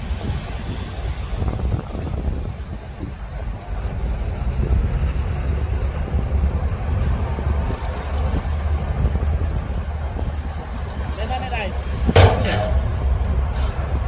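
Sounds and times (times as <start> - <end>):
heavy diesel engine rumbling: 11.8 - 14.0.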